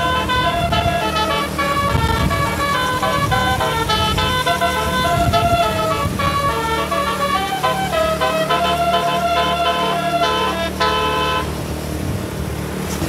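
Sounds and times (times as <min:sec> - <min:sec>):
multi-tone bus horn melody: 0:00.0 - 0:11.8
vehicle low rumble: 0:00.0 - 0:13.0.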